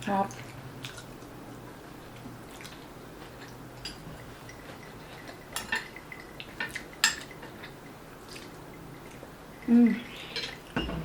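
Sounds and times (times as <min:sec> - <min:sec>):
utensils clinking on plates: 0:03.8 - 0:07.9, 0:09.6 - 0:11.0.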